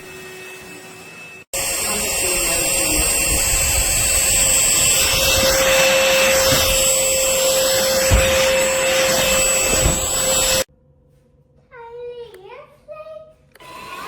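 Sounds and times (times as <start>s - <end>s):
vacuum motor whine: 0.0s - 10.7s
vacuum suction rush: 1.6s - 10.7s.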